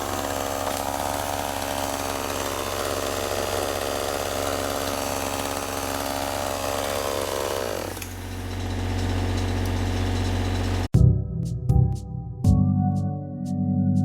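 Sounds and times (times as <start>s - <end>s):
chainsaw revving and idling: 0.0s - 10.9s.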